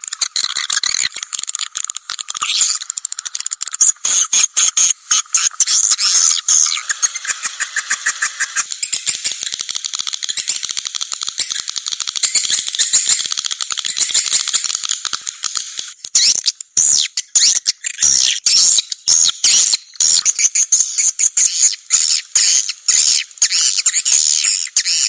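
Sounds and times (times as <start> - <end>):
swiftlets twittering and chirping: 0.0 - 25.0.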